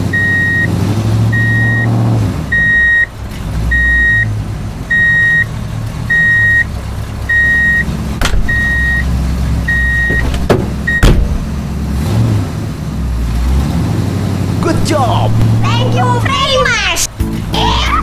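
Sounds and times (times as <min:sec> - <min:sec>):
truck reversing alarm beeping: 0:00.0 - 0:11.6
low engine rumble: 0:00.0 - 0:18.0.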